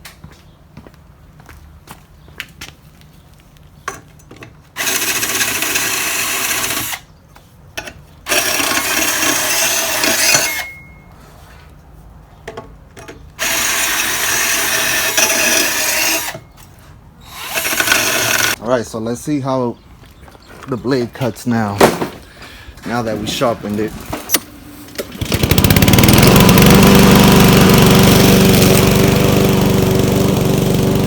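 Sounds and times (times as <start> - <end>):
drill grinding stone on blade: 4.8 - 7.1, 8.3 - 10.8, 13.4 - 16.5, 17.2 - 18.6.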